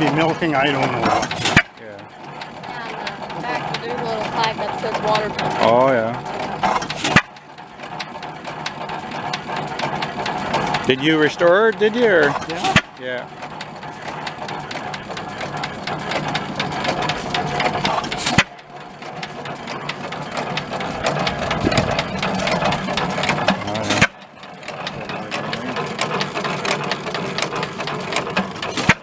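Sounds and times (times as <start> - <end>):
background talk: 0.0 - 1.2, 1.8 - 6.3, 10.8 - 13.3, 23.5 - 24.1, 25.0 - 26.1
stationary engine clattering: 0.0 - 29.0.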